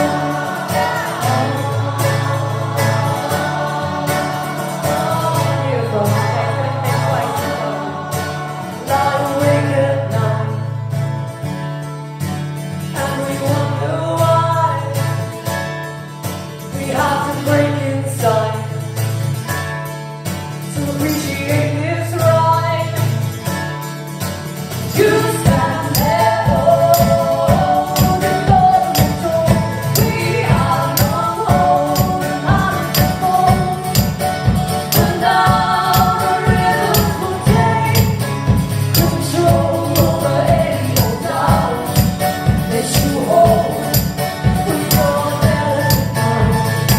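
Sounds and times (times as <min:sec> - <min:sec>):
voices singing in harmony: 0:00.0 - 0:10.7, 0:24.9 - 0:46.9
fast driving strumming rhythm: 0:00.0 - 0:46.9
guitar: 0:00.0 - 0:46.9.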